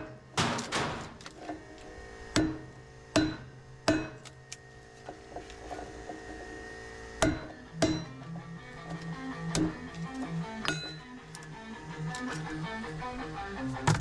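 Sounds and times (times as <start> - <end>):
hammer striking metal: 2.4 - 4.3, 7.2 - 8.4, 9.5 - 10.0, 10.6 - 11.2.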